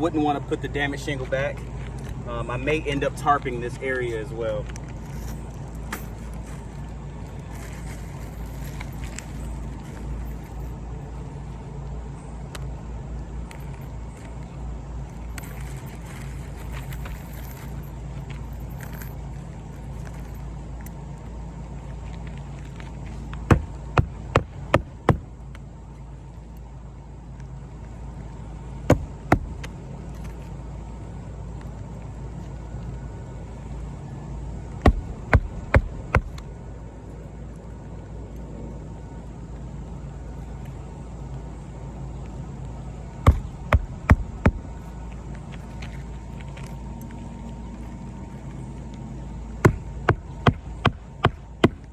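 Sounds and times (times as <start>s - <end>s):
steady low hum: 0.0s - 51.9s
hammer striking roofing nails: 23.5s - 25.3s, 28.9s - 29.6s, 34.8s - 36.4s, 43.3s - 44.7s, 49.6s - 51.9s.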